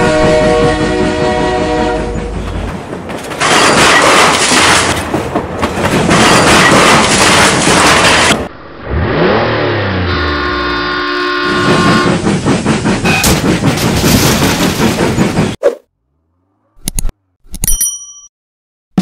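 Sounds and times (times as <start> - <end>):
vehicle horn: 0.0 - 2.1, 10.0 - 12.1
engine revving: 8.6 - 11.8.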